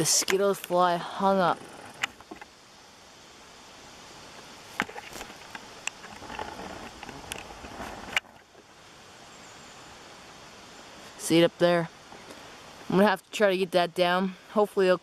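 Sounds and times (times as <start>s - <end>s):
rustling with clicks and snaps: 4.4s - 8.7s.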